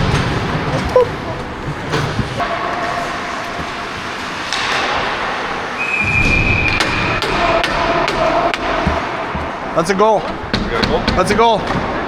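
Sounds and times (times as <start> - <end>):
skate blades scraping ice: 0.0 - 5.8.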